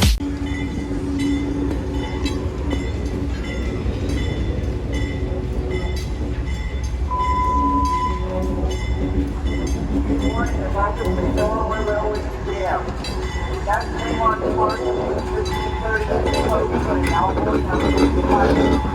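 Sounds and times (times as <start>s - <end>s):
freight train rumbling: 0.0s - 18.9s
brief steady tone: 7.1s - 8.4s.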